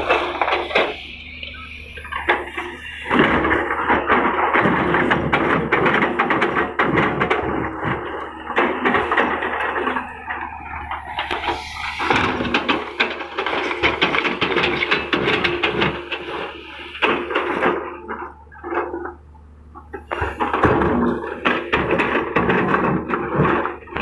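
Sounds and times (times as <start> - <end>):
crackling and rattling: 0.0 - 24.0
excavator engine hum: 0.0 - 24.0.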